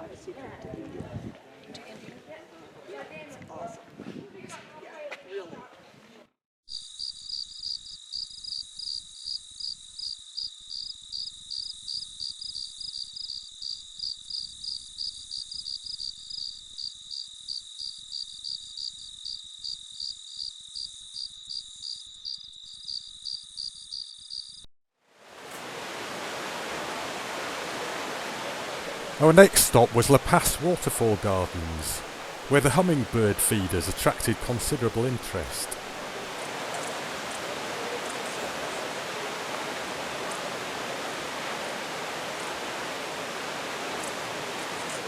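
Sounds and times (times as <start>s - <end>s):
insect calling in pulses: 6.7s - 24.6s
waterfall rushing: 25.2s - 45.0s.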